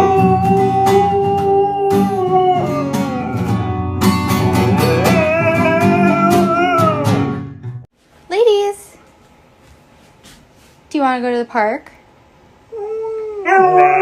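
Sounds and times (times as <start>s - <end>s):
guitar background music: 0.0s - 7.9s.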